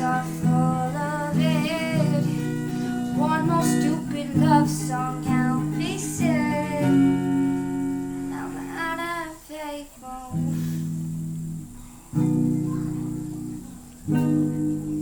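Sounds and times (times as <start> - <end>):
person singing: 0.0 - 7.6, 8.2 - 11.0
acoustic guitar strummed chords: 0.0 - 15.0.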